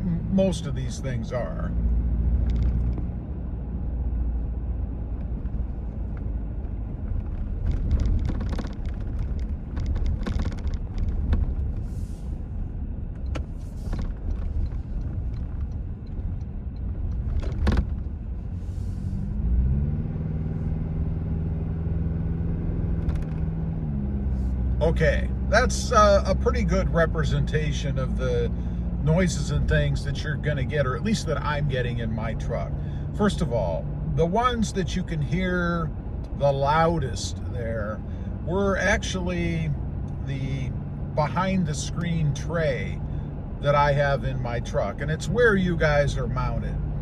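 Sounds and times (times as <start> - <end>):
cabin road noise: 0.0 - 47.0
drivetrain rumble: 0.0 - 47.0
interior plastic rattling: 5.2 - 11.8, 16.9 - 18.2
engine revving up: 18.9 - 22.1.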